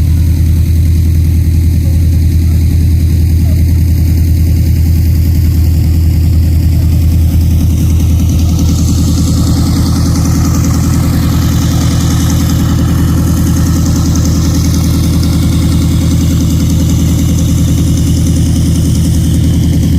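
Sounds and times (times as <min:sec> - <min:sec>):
piston engine idling: 0:00.0 - 0:19.9.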